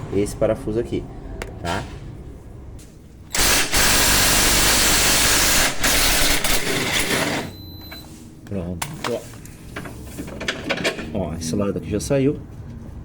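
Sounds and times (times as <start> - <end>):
power wrench running: 3.3 - 7.5.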